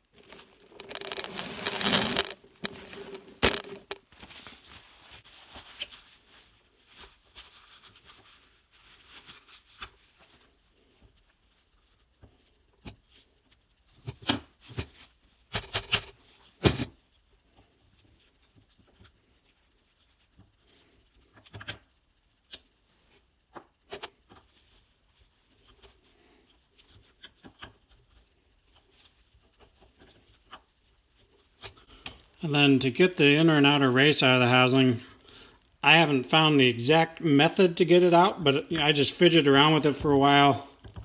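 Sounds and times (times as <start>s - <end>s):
metal scraping rustle: 0.1s - 5.9s.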